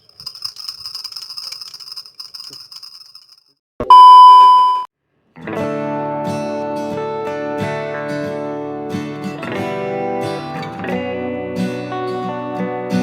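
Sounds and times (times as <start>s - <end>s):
high fluttering sound: 0.0s - 3.5s
loud electronic beep: 3.8s - 4.9s
acoustic guitar music: 5.4s - 13.0s.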